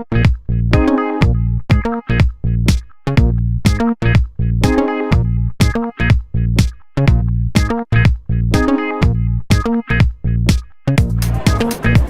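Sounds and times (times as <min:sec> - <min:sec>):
electronic dance music: 0:11.0 - 0:12.0.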